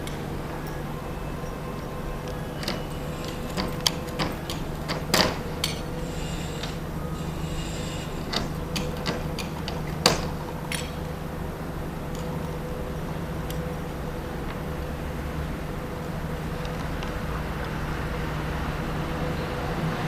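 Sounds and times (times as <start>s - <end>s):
steady low hum: 0.0s - 20.0s
metal clicks and knocks: 2.5s - 7.0s, 7.6s - 11.2s.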